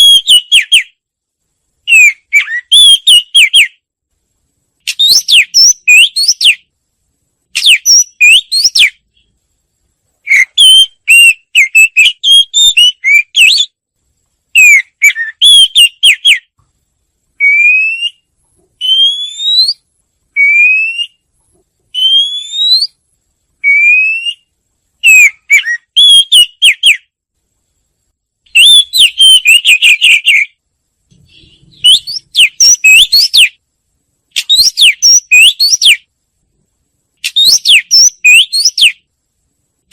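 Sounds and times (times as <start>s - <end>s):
songbird whistled song: 0.0s - 1.0s, 1.8s - 3.9s, 4.8s - 6.7s, 7.5s - 9.4s, 10.2s - 13.8s, 14.5s - 16.6s, 17.4s - 21.3s, 21.9s - 23.0s, 23.6s - 27.1s, 28.5s - 33.6s, 34.3s - 36.1s, 37.2s - 39.1s.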